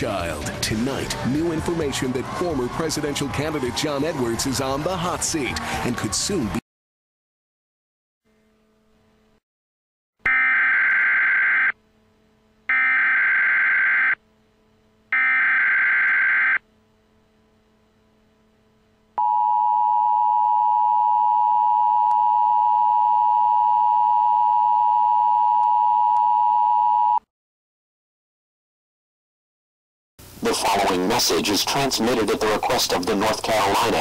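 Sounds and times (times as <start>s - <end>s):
buzzing data tone bursts: 10.3s - 11.8s, 12.7s - 14.2s, 15.1s - 16.6s.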